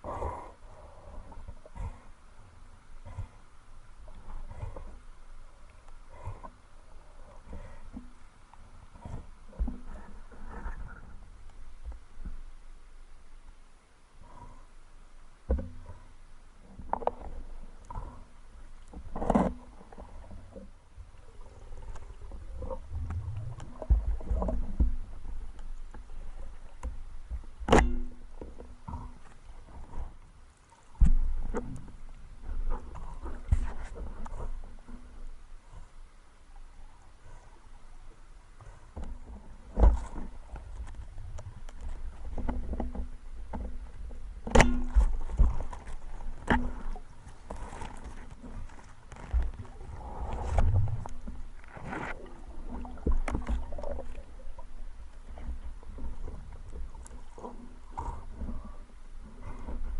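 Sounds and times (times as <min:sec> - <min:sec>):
muffled water sloshing: 0:00.0 - 0:59.9
low rumble: 0:21.1 - 0:26.5.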